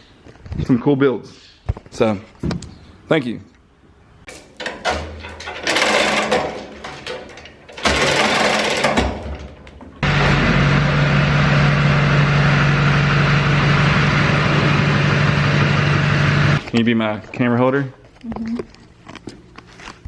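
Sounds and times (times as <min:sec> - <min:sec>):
clattering and rustling: 0:04.2 - 0:10.0
motor humming: 0:10.0 - 0:16.6.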